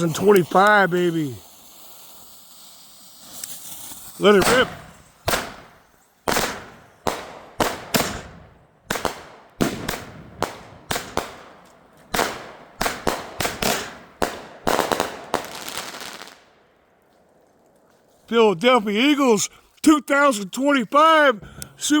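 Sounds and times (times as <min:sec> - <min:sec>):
fireworks banging: 0:00.0 - 0:16.4.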